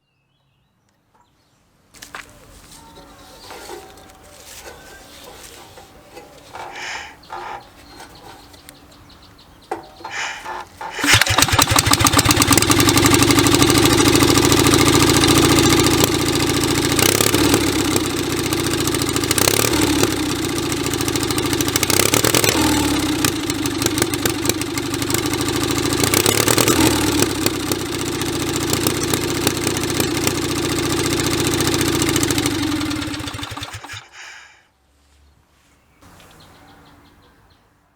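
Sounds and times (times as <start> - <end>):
two-cylinder engine running: 10.0 - 34.4.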